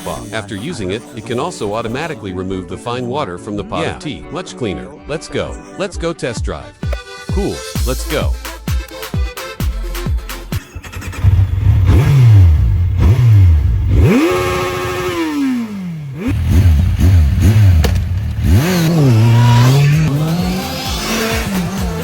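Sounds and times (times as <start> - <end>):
motorcycle engine revving: 10.5 - 22.0.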